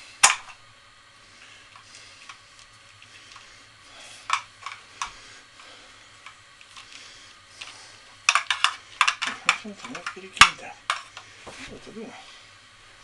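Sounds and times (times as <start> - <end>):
small objects clicking and knocking: 7.6 - 11.2.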